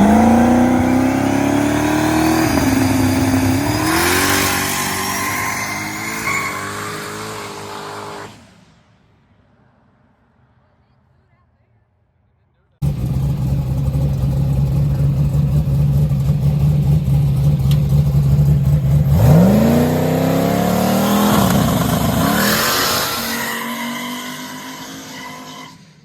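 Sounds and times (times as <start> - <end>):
drag race car engine revving: 0.0 - 8.4, 12.8 - 25.8.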